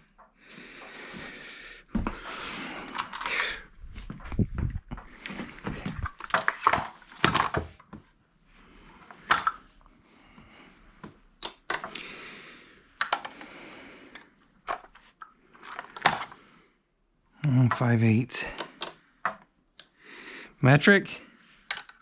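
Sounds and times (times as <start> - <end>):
metal wrenches clinking: 5.9 - 7.6.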